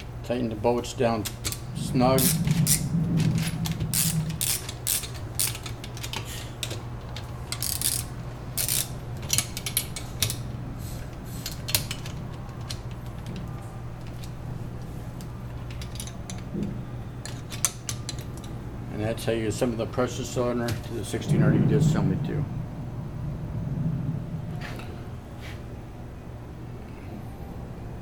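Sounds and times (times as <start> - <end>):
low hum: 1.4 - 6.0, 20.9 - 27.9
wrench clicking on bolts: 4.0 - 10.4.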